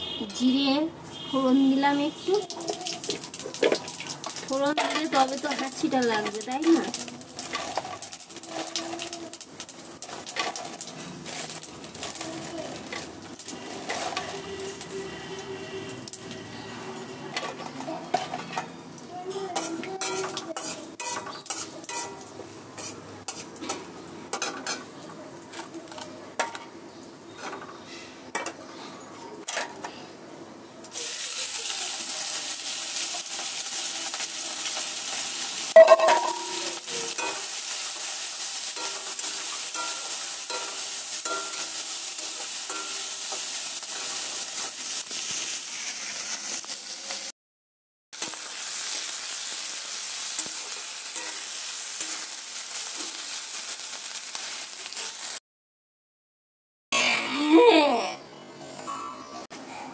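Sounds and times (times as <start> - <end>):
curry sizzling in oil: 0.0 - 28.7, 30.9 - 47.3, 48.2 - 55.4
metal spoon clinking in pan: 19.6 - 22.2, 35.8 - 37.6, 38.7 - 44.0.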